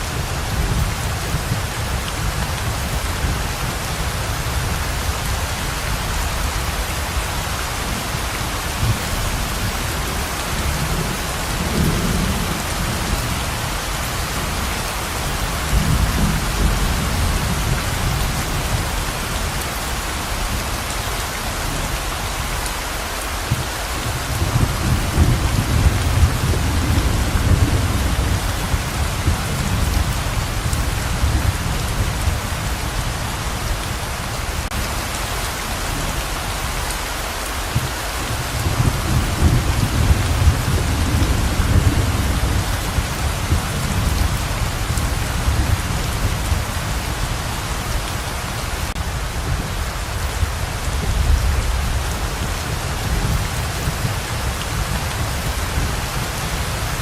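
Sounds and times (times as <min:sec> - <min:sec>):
heavy rain pouring: 0:00.0 - 0:57.0
thunder rolling: 0:24.0 - 0:32.8, 0:37.7 - 0:47.1.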